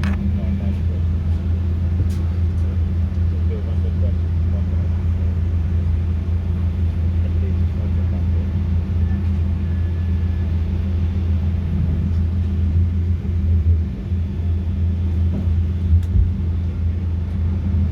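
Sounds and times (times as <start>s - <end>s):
airliner cabin drone: 0.0s - 17.9s.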